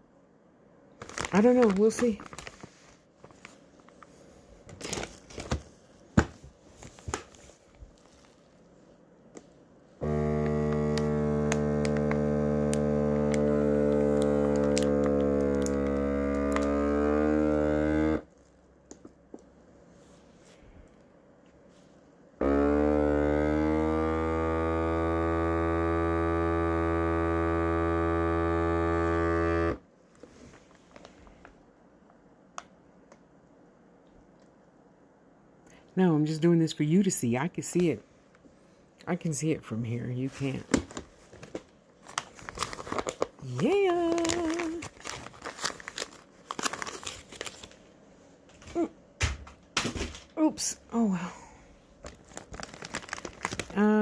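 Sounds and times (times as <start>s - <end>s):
plastic bag rustling: 1.0s - 9.0s, 11.4s - 16.7s, 40.4s - 48.0s, 51.9s - 54.0s
vacuum sealer pump humming: 10.0s - 18.3s, 22.4s - 29.8s.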